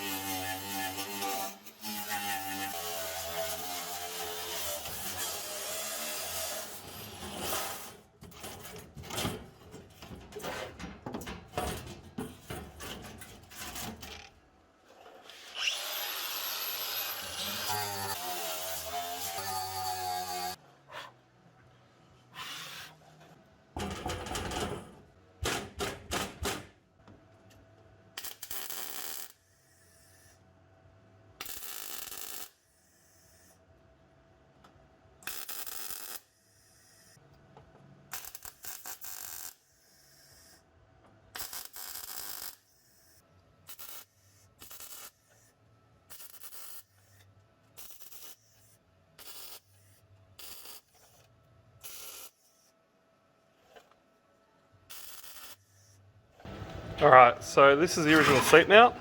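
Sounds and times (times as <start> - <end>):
welder crackling: 28.2 - 29.4, 56.5 - 59.0.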